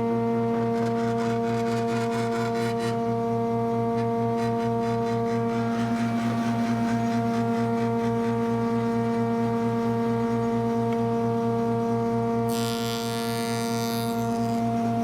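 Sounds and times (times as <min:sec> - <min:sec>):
electric motor humming: 0:00.4 - 0:15.0.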